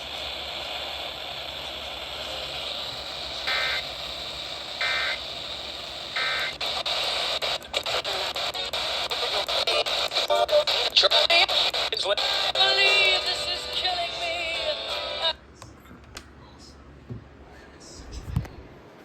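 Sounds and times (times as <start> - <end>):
crackling static clicks: 0.0 - 15.4
radio static hiss: 0.0 - 15.4
warbling data tones: 3.1 - 7.3.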